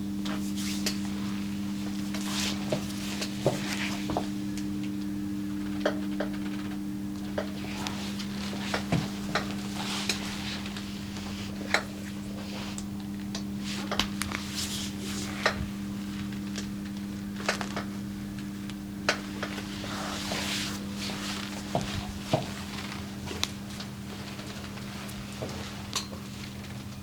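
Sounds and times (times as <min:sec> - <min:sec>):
steady low hum: 0:00.0 - 0:27.0
hands rubbing over body: 0:00.3 - 0:04.3, 0:07.6 - 0:12.8, 0:13.6 - 0:16.1, 0:19.3 - 0:23.4.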